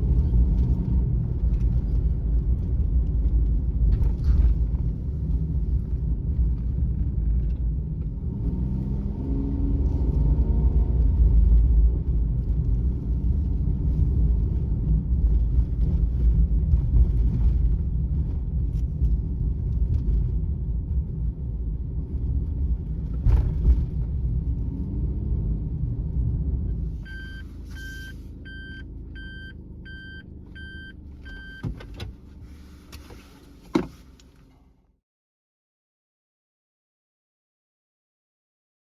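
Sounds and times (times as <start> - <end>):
engine and road rumble: 0.0 - 35.0
electronic beeps: 27.1 - 31.6.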